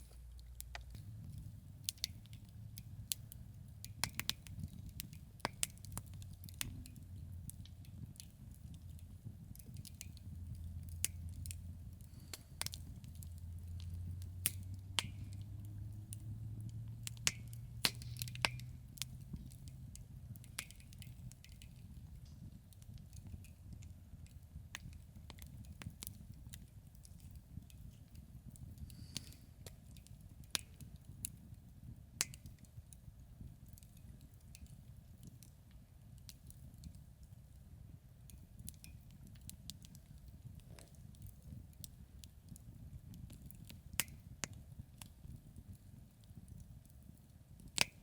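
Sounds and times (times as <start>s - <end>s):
low steady rumble: 0.0s - 32.2s
campfire crackling: 0.0s - 48.0s.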